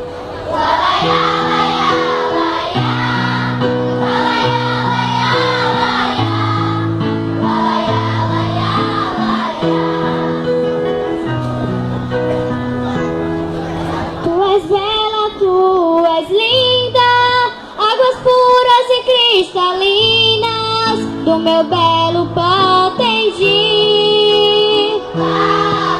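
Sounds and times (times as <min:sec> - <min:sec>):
choir singing: 0:00.0 - 0:11.1, 0:24.9 - 0:25.9
held keyboard chords: 0:00.0 - 0:16.0, 0:20.1 - 0:25.9.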